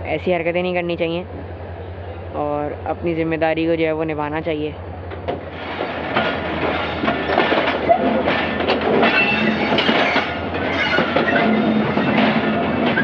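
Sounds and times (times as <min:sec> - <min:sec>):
train rumble and hum: 0:00.0 - 0:13.0
wheels clacking over rail joints: 0:05.0 - 0:13.0.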